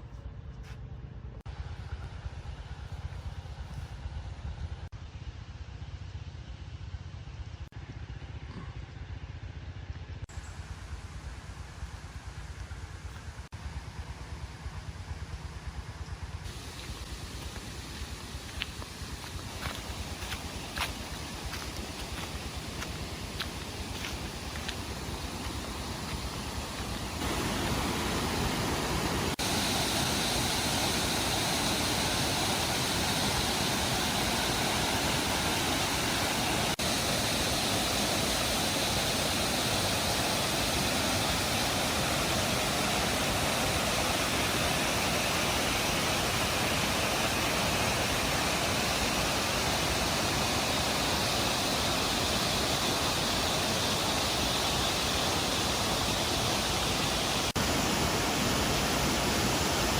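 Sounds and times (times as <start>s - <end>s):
waterfall rushing: 16.5s - 59.9s.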